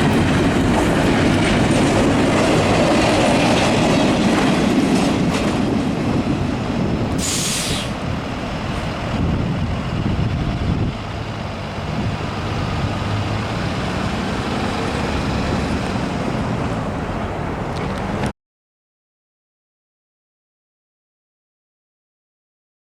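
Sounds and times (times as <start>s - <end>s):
freight train rumbling past: 0.0s - 18.3s
air hiss: 7.2s - 8.0s.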